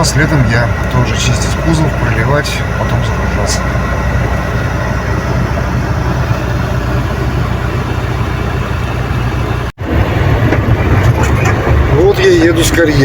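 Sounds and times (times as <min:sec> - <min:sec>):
heavy truck engine droning: 0:00.0 - 0:13.0.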